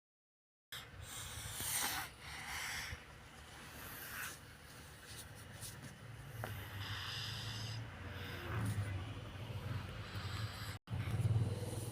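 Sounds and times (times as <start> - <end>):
low buzzing snore: 0.8 - 4.6, 6.1 - 11.9
noisy sleeping breaths: 0.8 - 11.9.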